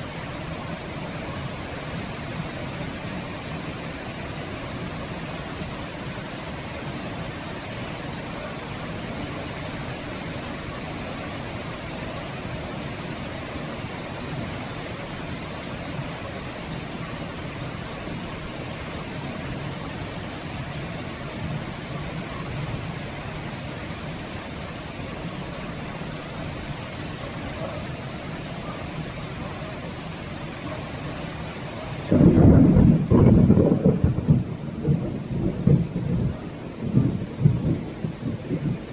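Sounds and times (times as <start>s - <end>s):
steady rain hiss: 0.0s - 38.9s
thunder rumble: 32.0s - 38.9s.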